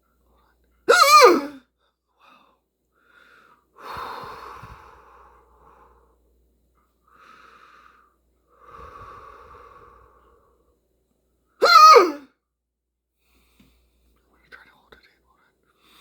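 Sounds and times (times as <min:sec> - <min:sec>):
person breathing heavily: 0:02.2 - 0:06.2, 0:07.1 - 0:10.6.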